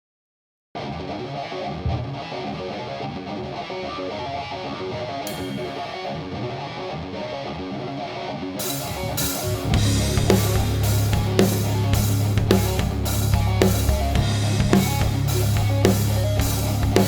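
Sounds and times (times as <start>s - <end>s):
electric guitar picked riff: 0.8s - 17.0s
cymbal: 5.3s - 6.3s
drum hits: 9.7s - 17.0s.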